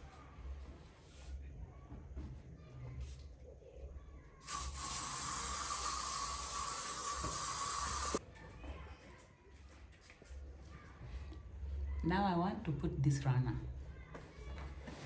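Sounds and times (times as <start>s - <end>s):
steady hiss: 4.4s - 8.2s.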